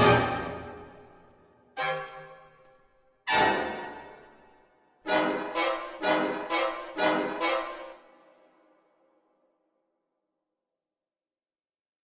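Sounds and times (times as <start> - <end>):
orchestral stinger chords: 0.0 - 1.1.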